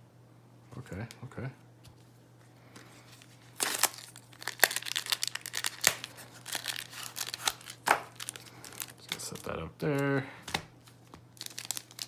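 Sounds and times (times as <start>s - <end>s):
foil wrapper crinkling and tearing: 3.0s - 12.0s.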